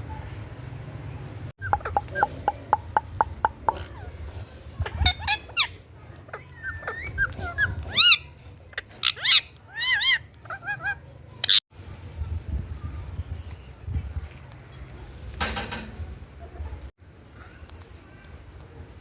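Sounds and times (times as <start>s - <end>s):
parrot chirping and calling: 1.6s - 4.1s, 4.8s - 11.6s.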